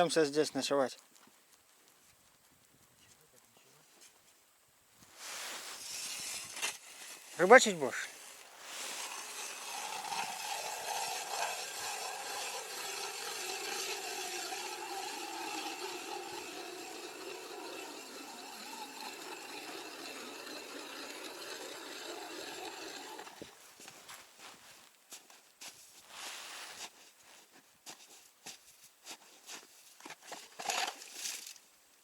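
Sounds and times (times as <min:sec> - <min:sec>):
auger scraping ice: 0:05.1 - 0:23.6, 0:27.9 - 0:31.6
ice auger grinding whir: 0:05.6 - 0:23.6, 0:30.0 - 0:31.6.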